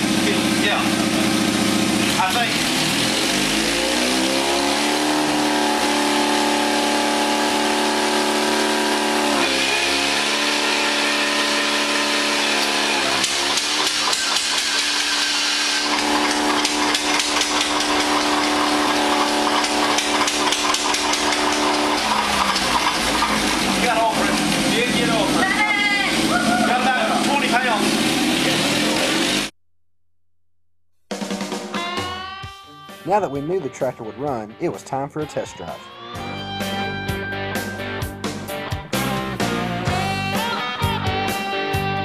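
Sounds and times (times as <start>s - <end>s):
rapid engine knocking: 0.0s - 5.5s, 11.6s - 29.5s
diesel engine starting: 0.0s - 29.5s.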